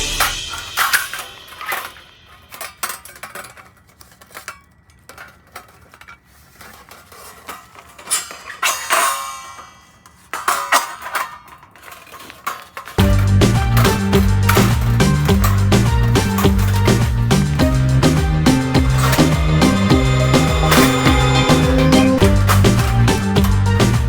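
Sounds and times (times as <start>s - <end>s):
sharp ringing metal strikes: 0.0s - 2.6s, 17.7s - 23.0s
metal parts clinking and clattering: 0.2s - 17.3s.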